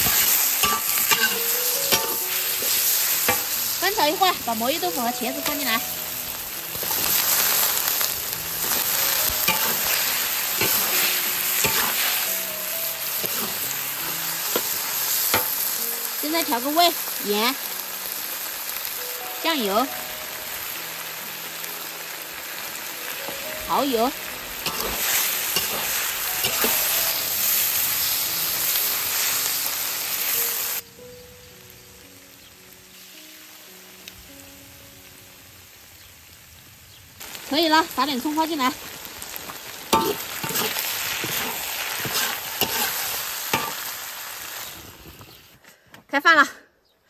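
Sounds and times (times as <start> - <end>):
spatula scraping and knocking pan: 0.0 - 3.6, 8.6 - 10.0, 11.6 - 12.0, 24.6 - 26.9, 40.0 - 43.8
food sizzling in a hot pan: 0.0 - 45.6.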